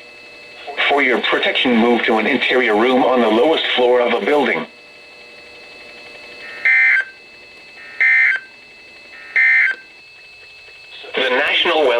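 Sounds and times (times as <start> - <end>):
radio hiss: 0.4 - 11.9
modem-like two-tone warbling: 0.6 - 11.9.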